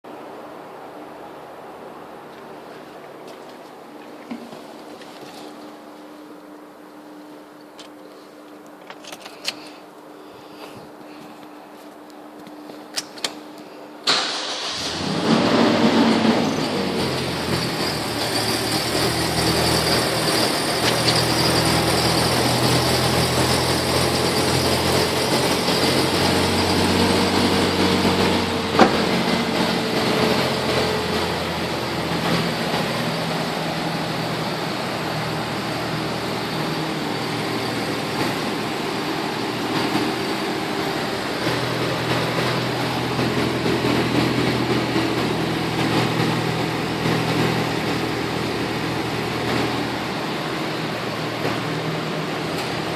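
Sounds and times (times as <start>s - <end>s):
car engine running: 14.3s - 52.9s
exhaust whistling drone: 14.6s - 51.3s.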